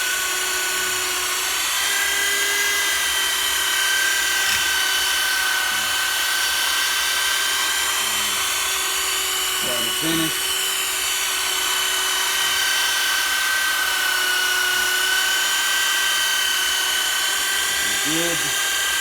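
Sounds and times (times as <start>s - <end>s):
power tool polishing whine: 0.0s - 19.0s.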